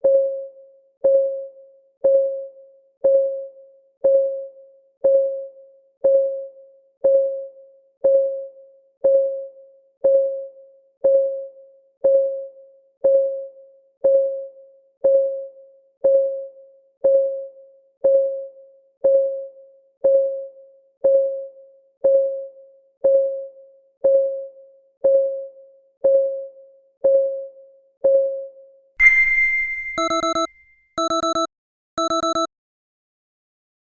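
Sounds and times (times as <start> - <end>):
clock ticking: 29.9 - 32.5.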